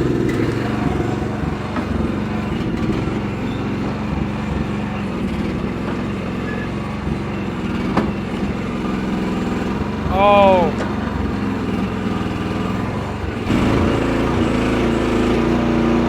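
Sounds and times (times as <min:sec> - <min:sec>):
excavator engine running: 0:00.0 - 0:16.0.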